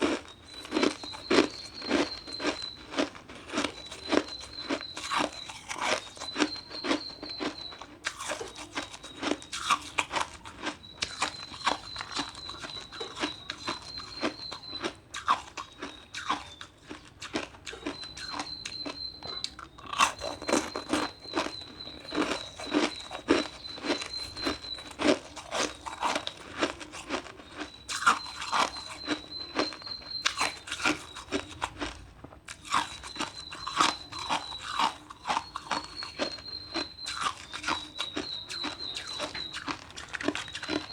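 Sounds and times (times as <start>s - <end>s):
ice being crunched in mouth: 27.9s - 40.9s.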